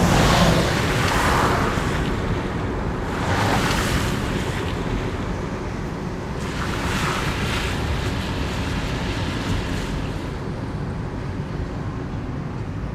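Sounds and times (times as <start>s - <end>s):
low road rumble: 0.0s - 12.9s
tyres hissing through water: 6.4s - 10.4s.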